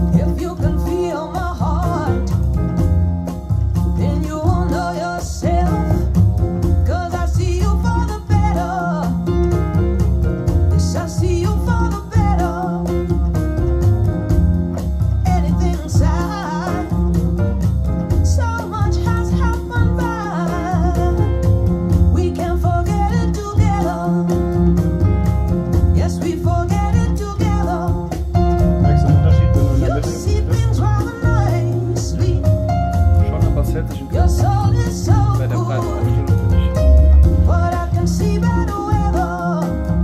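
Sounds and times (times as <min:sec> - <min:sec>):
guitar: 0:00.0 - 0:40.0
person singing: 0:26.0 - 0:32.7, 0:33.5 - 0:36.7
heavy steady bass line: 0:28.4 - 0:37.6.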